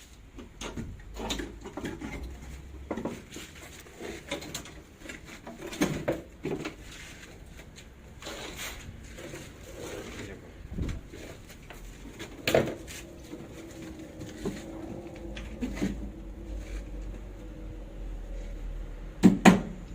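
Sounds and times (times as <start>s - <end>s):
knocks on steel bar and wood: 19.2s - 19.8s.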